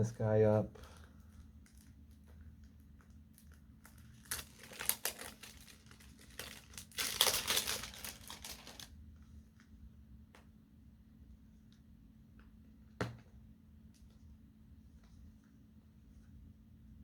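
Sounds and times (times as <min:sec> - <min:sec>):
packaging crinkling and tearing: 0:03.3 - 0:08.9.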